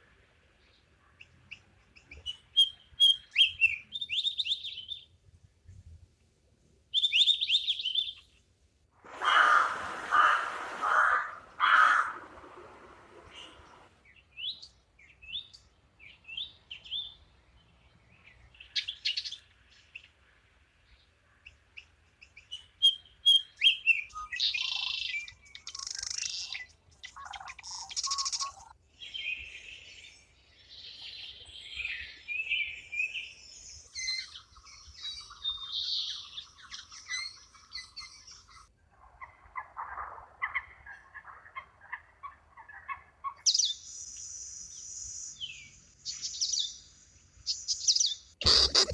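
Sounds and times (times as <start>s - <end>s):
songbirds chirping and singing: 21.8s - 48.9s.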